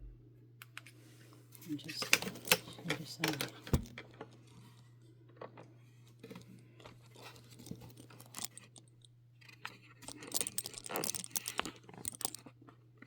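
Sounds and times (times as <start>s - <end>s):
steady low hum: 0.0s - 5.0s
objects rustling and clicking: 1.6s - 12.6s.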